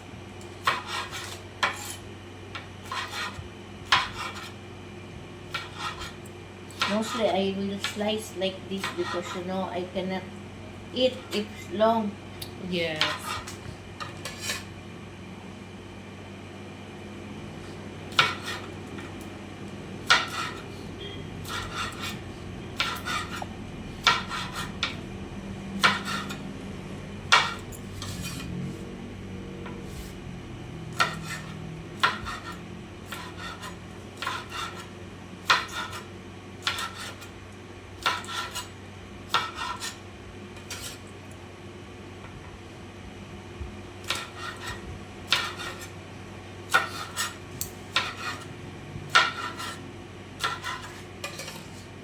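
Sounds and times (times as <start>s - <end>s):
steady low hum: 0.0s - 52.0s
knife slicing beans on board: 0.6s - 4.6s, 5.5s - 8.0s, 8.8s - 9.5s, 13.0s - 14.7s, 18.1s - 19.2s, 20.0s - 20.7s, 21.4s - 22.2s, 22.8s - 25.0s, 25.8s - 26.4s, 31.0s - 37.3s, 38.0s - 38.7s, 39.3s - 40.0s, 44.0s - 45.9s, 46.7s - 48.5s, 49.1s - 49.8s, 50.4s - 51.9s.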